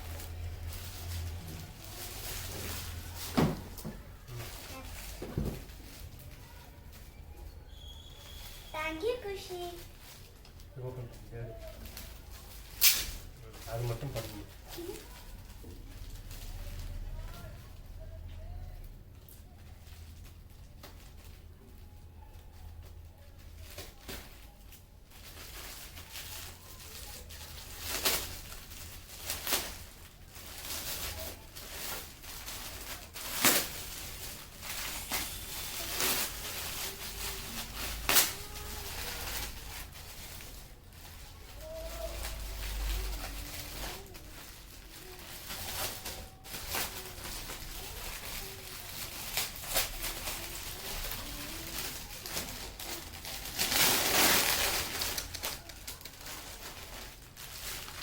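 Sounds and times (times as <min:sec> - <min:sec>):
gift wrapping crinkling: 0:00.0 - 0:58.0
paper ripping: 0:12.7 - 0:13.2, 0:26.0 - 0:44.2, 0:44.9 - 0:58.0.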